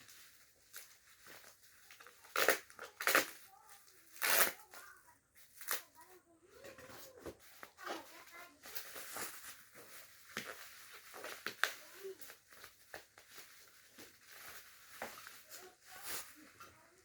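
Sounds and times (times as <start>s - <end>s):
plastic wrap rustling: 0.0s - 17.0s
sharp crackles and clicks: 0.1s - 6.0s.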